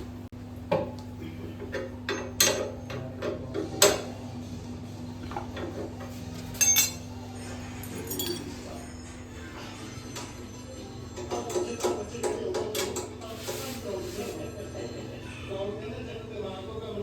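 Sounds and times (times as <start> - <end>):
metal tools clinking and knocking: 6.5 - 7.1, 7.8 - 8.6.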